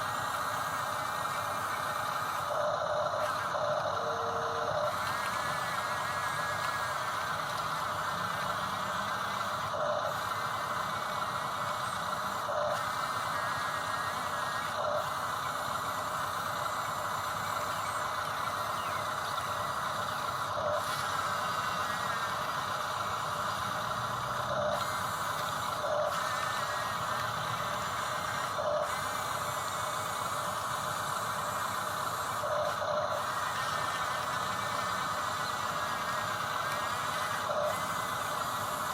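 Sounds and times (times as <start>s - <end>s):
electric motors whining: 0.0s - 38.9s.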